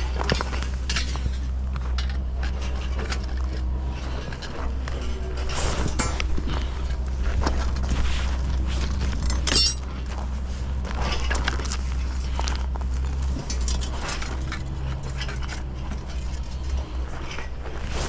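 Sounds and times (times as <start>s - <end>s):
steady low hum: 0.0s - 18.0s
tools clinking and knocking: 5.8s - 6.6s, 9.0s - 10.0s.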